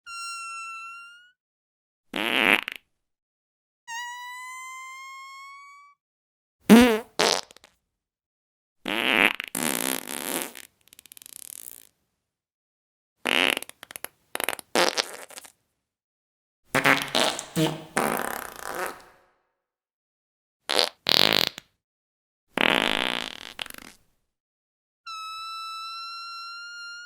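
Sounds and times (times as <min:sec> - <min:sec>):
fart sound effects: 0:02.2 - 0:02.8, 0:06.7 - 0:07.6, 0:16.8 - 0:19.2, 0:20.7 - 0:21.6, 0:22.6 - 0:24.0.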